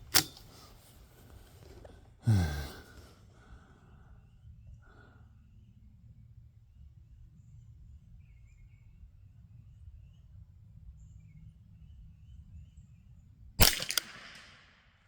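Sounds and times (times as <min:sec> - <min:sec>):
faint bird chirps: 0:03.8 - 0:13.4
rifle shot crack: 0:13.6 - 0:15.0.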